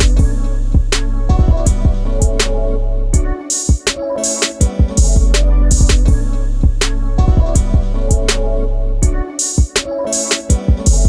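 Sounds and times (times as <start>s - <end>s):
music with drum beat and bass: 0.0s - 2.6s, 3.2s - 11.0s.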